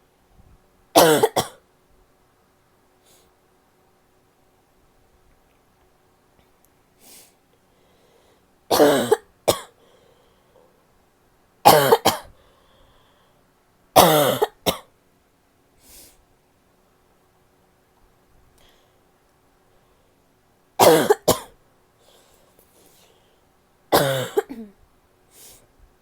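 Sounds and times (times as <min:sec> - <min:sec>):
woman coughing: 0:01.0 - 0:01.6, 0:08.7 - 0:09.8, 0:11.7 - 0:12.3, 0:14.0 - 0:14.9, 0:20.8 - 0:21.5, 0:23.9 - 0:24.8
faint breath: 0:03.0 - 0:03.4, 0:07.0 - 0:08.6, 0:09.8 - 0:10.9, 0:12.3 - 0:13.5, 0:15.8 - 0:16.2, 0:18.6 - 0:19.1, 0:19.7 - 0:20.3, 0:22.0 - 0:23.6, 0:25.3 - 0:25.8.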